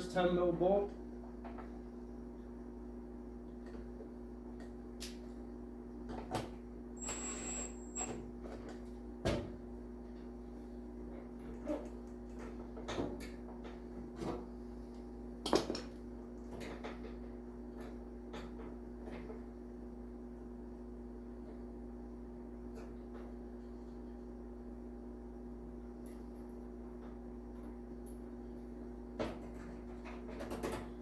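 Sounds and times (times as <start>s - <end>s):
steady low hum: 6.7s - 8.2s.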